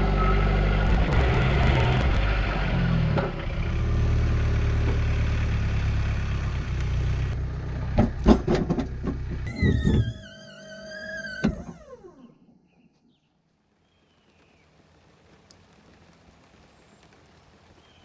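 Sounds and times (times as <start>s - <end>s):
engine idling: 0.9s - 2.6s.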